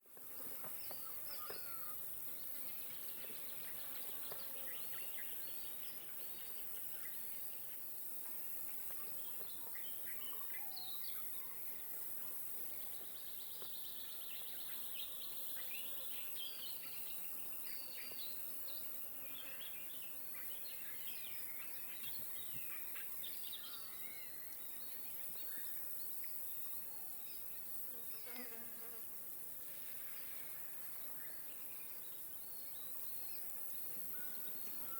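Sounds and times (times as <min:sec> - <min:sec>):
high insect buzz: 0:27.5 - 0:32.2.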